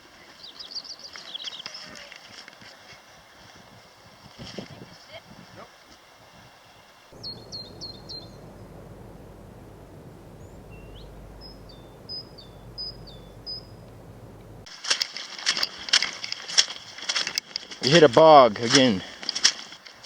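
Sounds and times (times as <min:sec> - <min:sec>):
crackling footsteps: 0:07.2 - 0:14.7
low background rush: 0:07.2 - 0:14.7
small bird chirping: 0:07.2 - 0:14.7.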